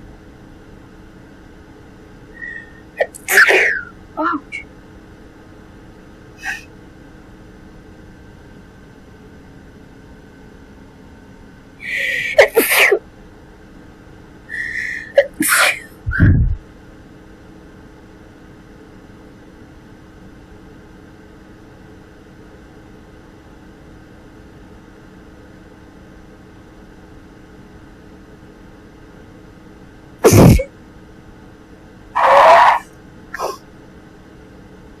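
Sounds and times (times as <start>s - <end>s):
woman sneezing: 2.4s - 4.4s, 6.4s - 6.7s, 11.9s - 13.0s, 14.6s - 16.4s, 30.2s - 30.7s, 32.2s - 32.8s, 33.4s - 33.6s.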